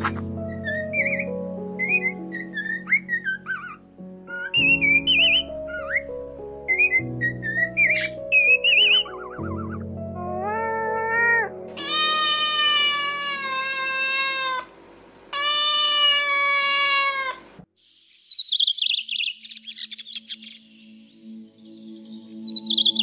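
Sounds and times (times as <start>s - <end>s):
rapid high bird chirps: 0.0s - 9.8s, 17.8s - 21.0s, 21.7s - 23.0s
soft background music: 0.0s - 13.4s, 19.4s - 23.0s
cat meowing: 10.2s - 14.7s, 15.4s - 17.4s.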